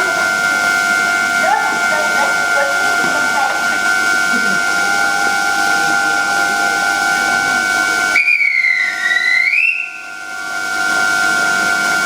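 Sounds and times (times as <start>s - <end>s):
train warning chime: 0.0s - 8.2s
steady high tone: 0.0s - 11.0s.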